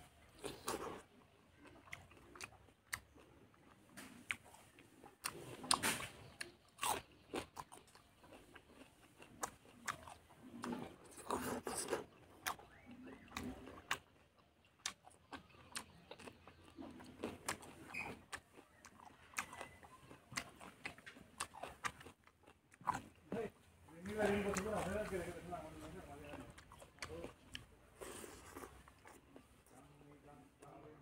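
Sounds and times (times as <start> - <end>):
close-miked chewing: 0.0 - 31.0
crunchy bites: 0.2 - 25.0.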